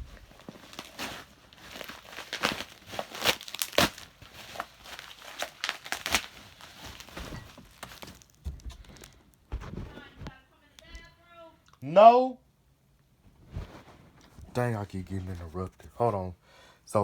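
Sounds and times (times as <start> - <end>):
packing material crinkling: 0.0 - 10.9.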